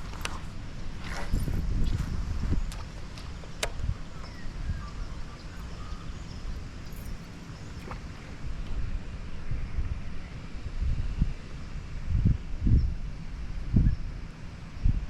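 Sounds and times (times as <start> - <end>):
wind buffeting microphone: 0.0 - 15.0
faint bird chirps: 2.6 - 8.2
sharp clicks: 2.7 - 4.4.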